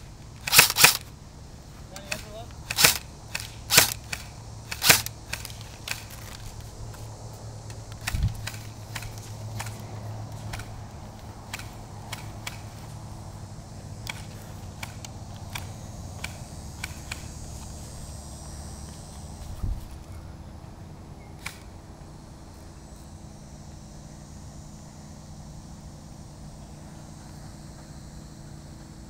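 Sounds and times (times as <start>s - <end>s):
distant airsoft gun shots: 0.4s - 1.1s, 2.1s - 6.1s, 11.5s - 12.8s, 14.0s - 17.4s.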